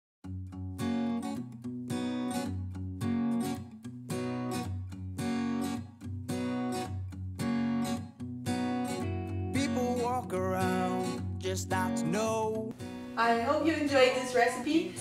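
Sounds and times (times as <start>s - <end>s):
strummed acoustic guitar: 0.2s - 15.0s.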